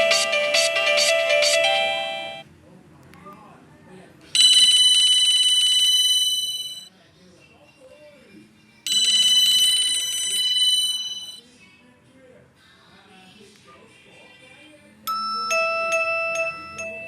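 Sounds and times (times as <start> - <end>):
mobile phone ringtone: 0.0 - 2.4, 4.4 - 6.9, 8.9 - 11.4, 15.1 - 17.0.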